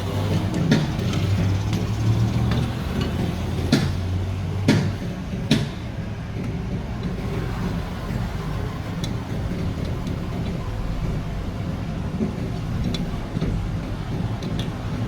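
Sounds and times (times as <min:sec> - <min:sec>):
sharp knocks: 0:02.6 - 0:05.9.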